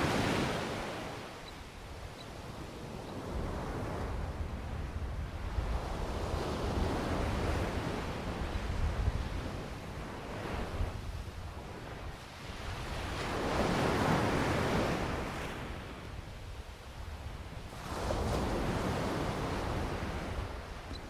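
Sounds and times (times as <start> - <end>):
waves breaking: 0.0 - 1.5, 17.7 - 21.0
wind rumbling on microphone: 0.0 - 21.0.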